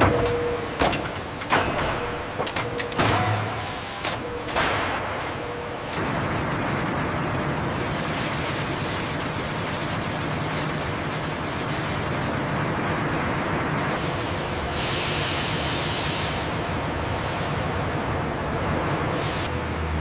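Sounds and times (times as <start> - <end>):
sawmill machinery rumble and hiss: 5.9 - 20.0.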